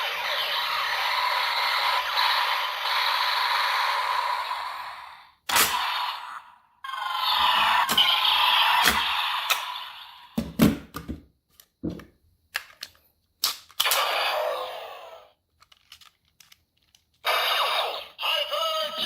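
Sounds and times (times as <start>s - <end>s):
electronic toy sound effect: 0.0s - 10.4s, 13.8s - 15.3s, 17.2s - 19.0s
plastic toy clicks and knocks: 15.6s - 17.2s.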